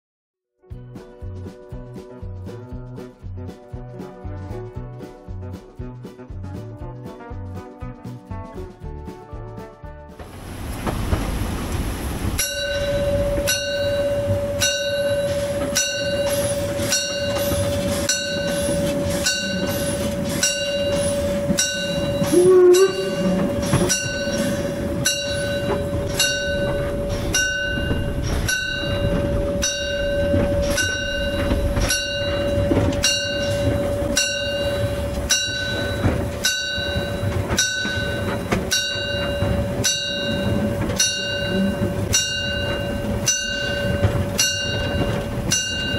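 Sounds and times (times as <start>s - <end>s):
train rumble: 0.7s - 45.9s
locomotive bell ringing: 12.2s - 45.9s
brief wavering pitch sound: 22.1s - 23.8s.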